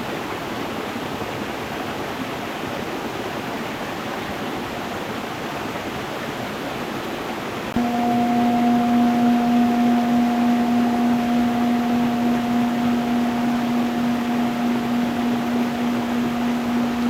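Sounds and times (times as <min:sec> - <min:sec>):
singing bowl ringing: 0:07.8 - 0:17.0.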